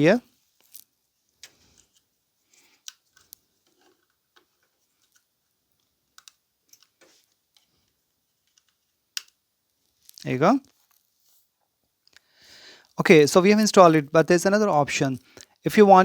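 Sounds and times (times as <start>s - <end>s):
cable connectors clicking: 2.6s - 5.3s, 6.1s - 7.7s, 8.5s - 9.4s.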